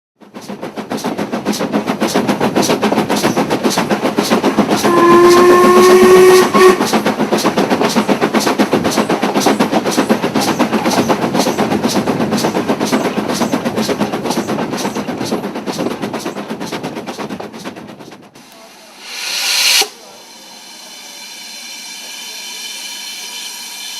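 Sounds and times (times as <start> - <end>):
steam locomotive exhaust beating: 0.2 - 23.9
steam whistle: 4.8 - 6.9, 19.0 - 23.9.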